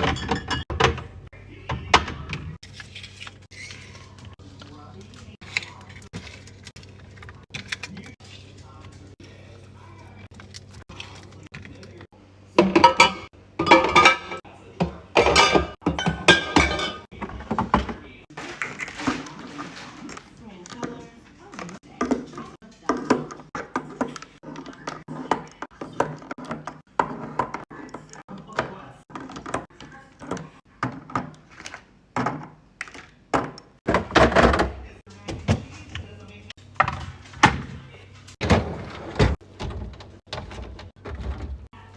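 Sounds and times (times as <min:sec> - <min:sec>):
glass jars clinking together: 0:00.0 - 0:01.1, 0:12.6 - 0:14.4, 0:15.2 - 0:17.1
containers clattering: 0:00.0 - 0:04.7, 0:12.6 - 0:27.7, 0:28.4 - 0:41.9
groceries knocking and thudding: 0:00.0 - 0:09.1, 0:12.6 - 0:41.9.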